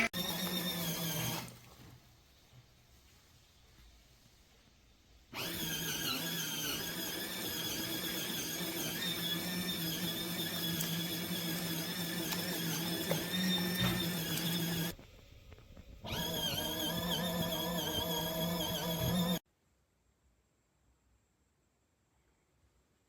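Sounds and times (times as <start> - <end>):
small electric motor humming: 5.4 - 15.0, 16.1 - 19.4.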